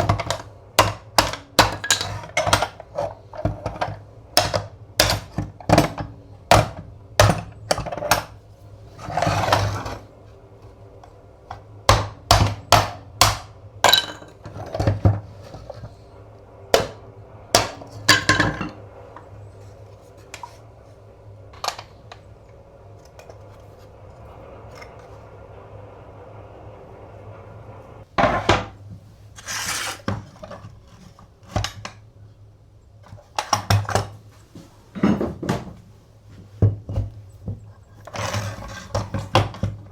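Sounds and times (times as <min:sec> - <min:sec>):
metal scraping: 0:07.4 - 0:10.4, 0:29.4 - 0:31.2.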